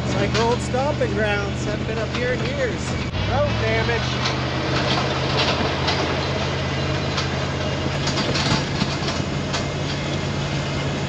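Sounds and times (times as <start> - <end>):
truck engine drone: 0.0 - 11.0
truck rattling over bumps: 0.0 - 11.0.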